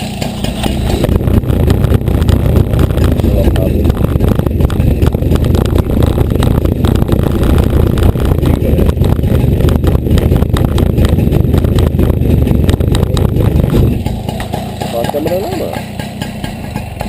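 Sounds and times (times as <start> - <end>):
moped engine idling: 0.0 - 17.0.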